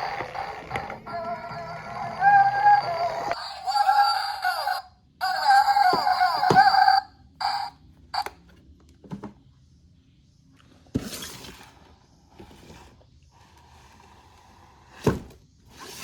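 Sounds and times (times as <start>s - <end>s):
synthesized electronic tune: 0.7s - 7.7s.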